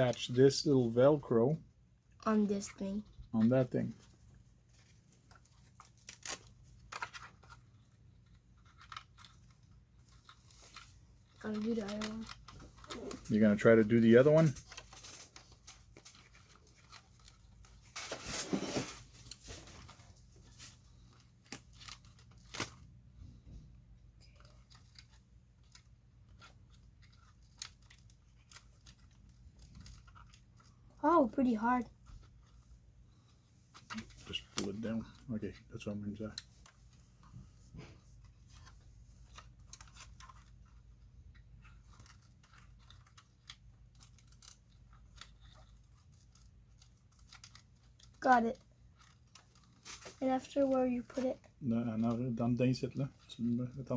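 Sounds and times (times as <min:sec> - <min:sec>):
fabric rustling: 0:10.2 - 0:23.4.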